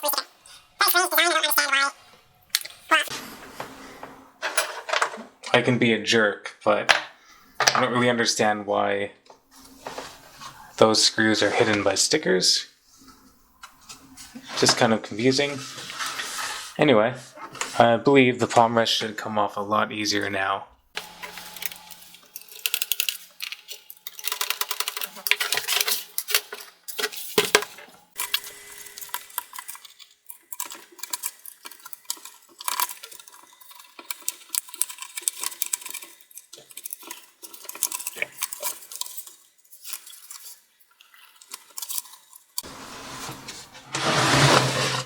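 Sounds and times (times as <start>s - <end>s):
plastic clips clicking and popping: 28.2s - 40.4s.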